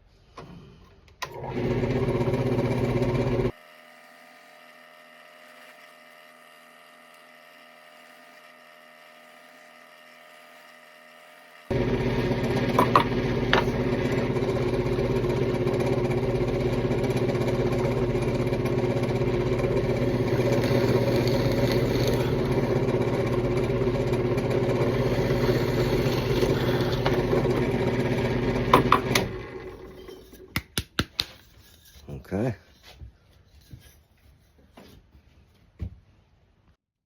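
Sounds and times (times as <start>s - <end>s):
drill press motor humming: 1.2s - 30.5s.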